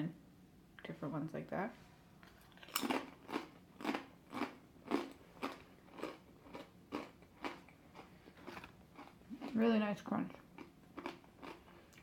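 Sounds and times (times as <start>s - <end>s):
person crunching potato chips: 2.3s - 9.6s, 10.6s - 12.0s.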